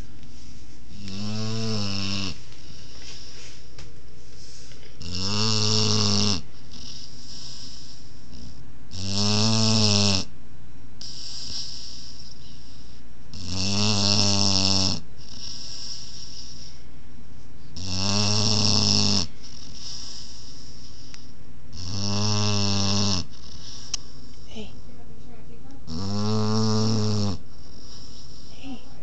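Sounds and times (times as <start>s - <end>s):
soft breathing: 0.0s - 1.7s, 2.3s - 5.0s, 6.4s - 8.7s, 15.2s - 17.8s, 19.2s - 21.5s, 23.2s - 25.6s, 27.4s - 29.0s
puppy snoring: 0.9s - 3.6s, 4.9s - 10.3s, 11.0s - 16.8s, 17.8s - 24.9s, 25.8s - 29.0s.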